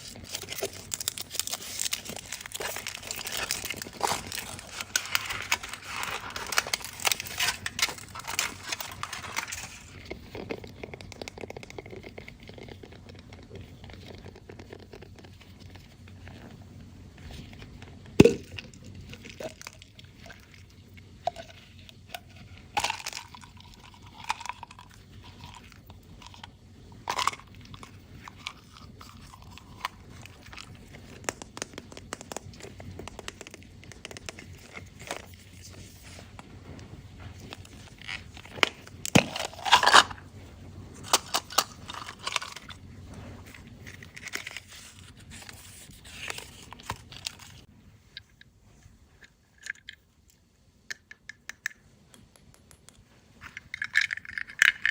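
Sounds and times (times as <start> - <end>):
foil wrapper crinkling and tearing: 0.0 - 15.9, 37.4 - 40.2, 41.0 - 42.8, 43.4 - 47.7.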